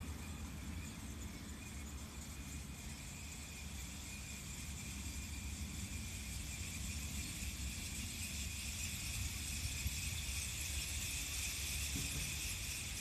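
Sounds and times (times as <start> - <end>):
faint high steady tones: 0.0 - 13.0
windmill low rumble: 0.0 - 13.0
hiss: 2.2 - 13.0.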